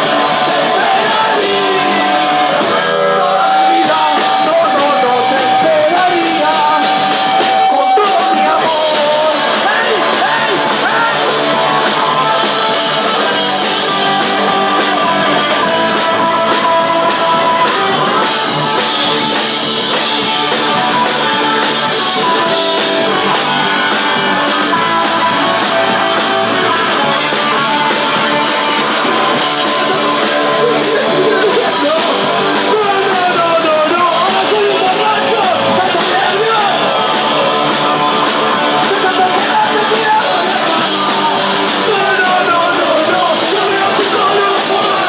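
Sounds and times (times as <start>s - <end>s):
electric guitars: 0.0s - 45.0s
punk rock band playing live: 0.0s - 45.0s.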